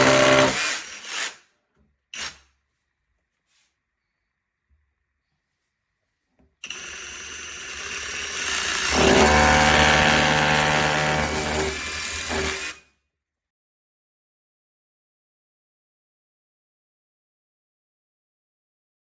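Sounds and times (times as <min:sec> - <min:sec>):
rotary hammer drill running: 0:00.0 - 0:01.4, 0:06.6 - 0:12.8.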